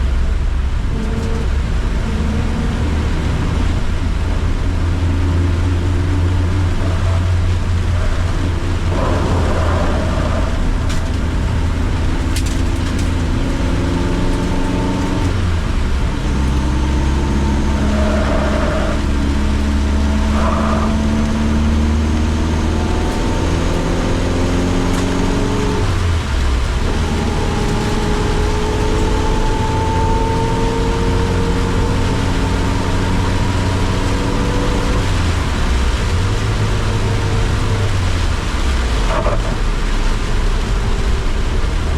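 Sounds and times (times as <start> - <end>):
car engine accelerating: 0.0 - 41.9.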